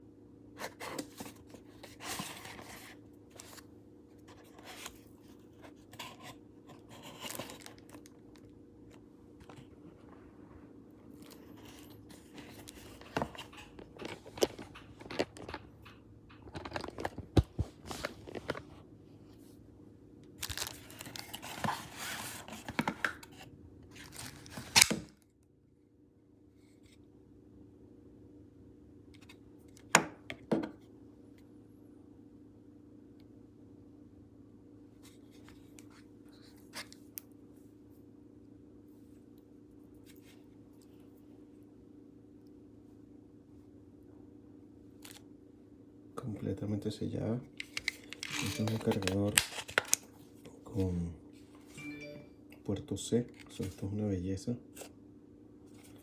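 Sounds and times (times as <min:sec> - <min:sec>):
faint steady hum: 0:00.0 - 0:56.0
hands handling objects: 0:04.3 - 0:08.1, 0:11.2 - 0:18.7, 0:20.4 - 0:25.1, 0:47.5 - 0:50.9.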